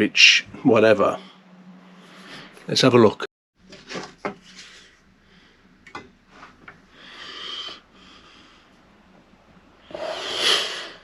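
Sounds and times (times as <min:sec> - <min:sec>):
person blowing out air: 0:09.9 - 0:11.0.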